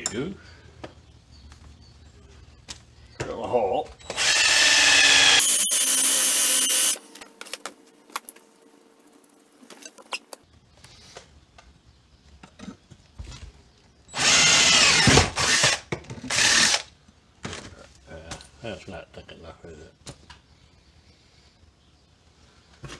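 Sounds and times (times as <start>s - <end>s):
electric drill whining: 4.0s - 7.2s, 14.2s - 16.9s.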